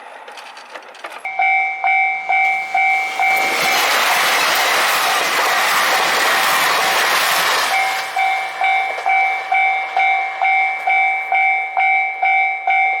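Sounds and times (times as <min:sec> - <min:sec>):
passing train rushing: 0:00.0 - 0:13.0
level-crossing warning bell ringing: 0:01.3 - 0:13.0.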